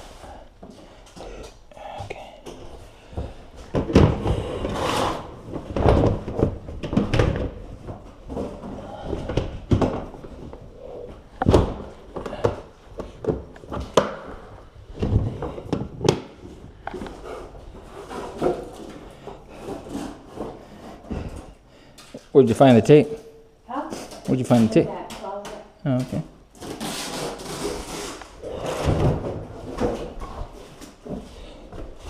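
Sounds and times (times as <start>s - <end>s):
boxes thudding and knocking: 3.1s - 21.4s, 28.5s - 32.0s.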